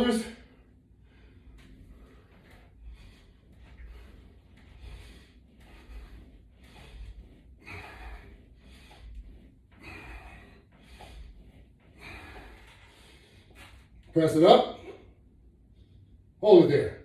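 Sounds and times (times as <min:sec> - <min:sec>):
person breathing hard: 0:00.0 - 0:14.1.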